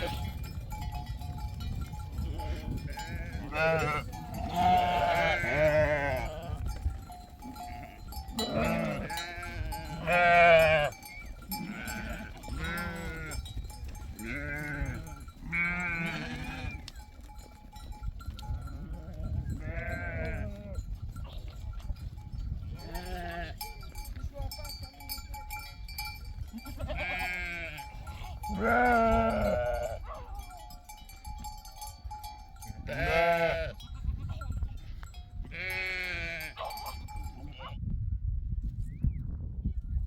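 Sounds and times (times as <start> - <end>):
sheep bleating: 0.0 - 0.4, 2.2 - 6.8, 7.6 - 13.4, 14.2 - 16.8, 18.8 - 21.4, 22.8 - 23.6, 26.5 - 30.3, 32.8 - 33.9, 35.5 - 37.7.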